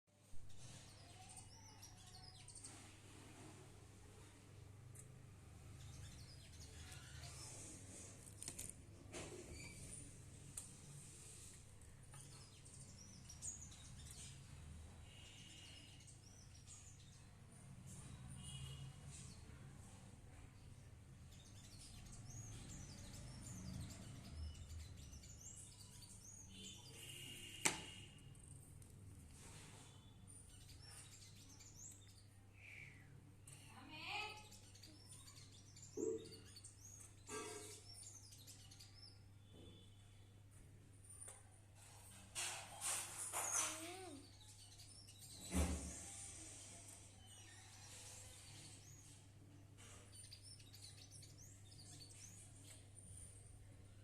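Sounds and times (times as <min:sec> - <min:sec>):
small birds chirping: 0:00.2 - 0:54.0.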